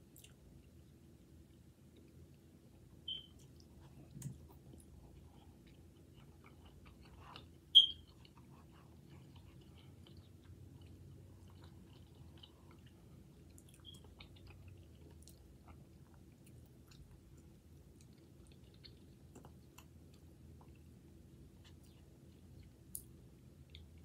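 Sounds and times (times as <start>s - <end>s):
chewing noodles: 3.3s - 21.0s.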